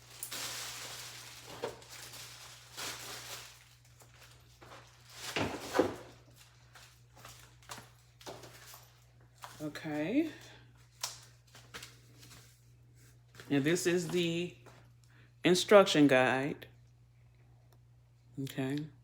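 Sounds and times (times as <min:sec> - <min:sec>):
packaging rustling: 0:00.0 - 0:09.7.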